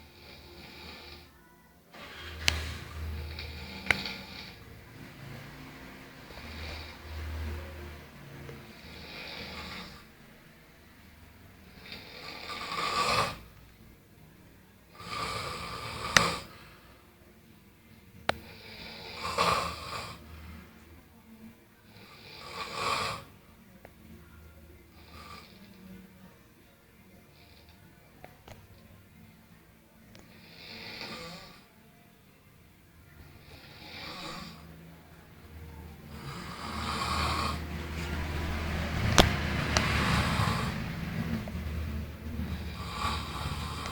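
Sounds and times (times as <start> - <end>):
rasping snores: 0.0 - 1.4, 2.3 - 7.7, 8.6 - 10.1, 11.6 - 13.5, 14.9 - 16.8, 18.4 - 20.3, 21.8 - 23.3, 24.9 - 25.8, 30.3 - 31.7, 33.4 - 34.7, 36.1 - 41.0, 42.2 - 43.9
quiet breaths: 0.0 - 43.9
low drone: 2.0 - 11.8, 34.5 - 43.9.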